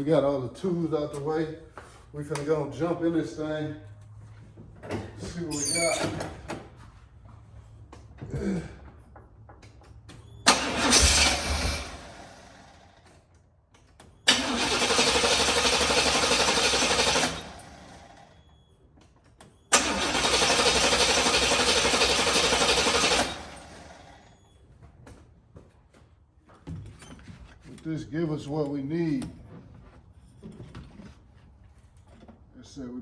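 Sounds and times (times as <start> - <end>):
starter cranking engine: 10.5 - 13.1, 14.2 - 18.4, 19.7 - 24.3.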